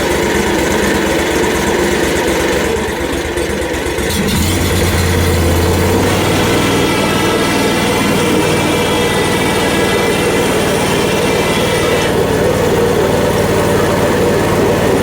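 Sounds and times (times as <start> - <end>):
sawmill engine running: 0.0 - 15.0
strong deep hum: 4.1 - 15.0.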